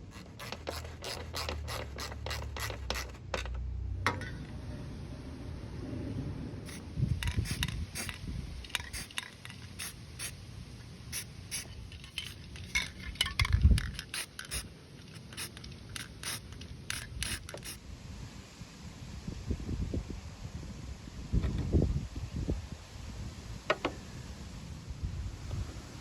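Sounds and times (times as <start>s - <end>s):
tools and metal parts clinking: 7.1s - 9.8s, 11.8s - 17.6s.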